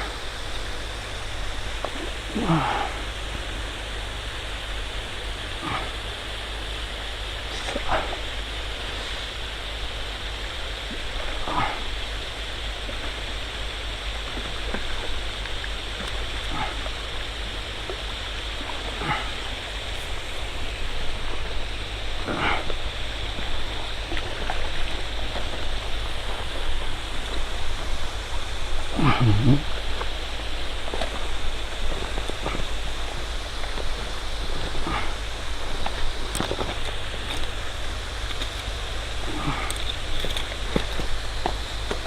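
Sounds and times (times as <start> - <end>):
river water rushing: 0.0 - 42.0
distant animal calls: 16.4 - 17.0, 18.7 - 20.4.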